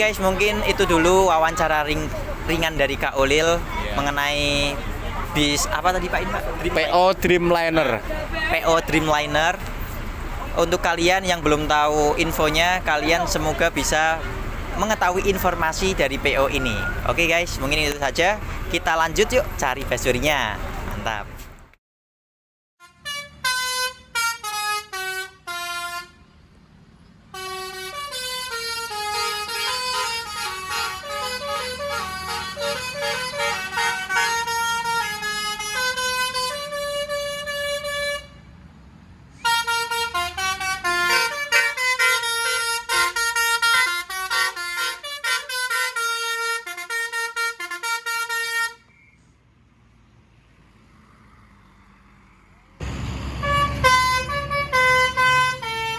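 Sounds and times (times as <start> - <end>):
bus melody horn playing tune: 22.8 - 26.4, 27.3 - 38.6, 39.4 - 49.0, 52.8 - 55.9.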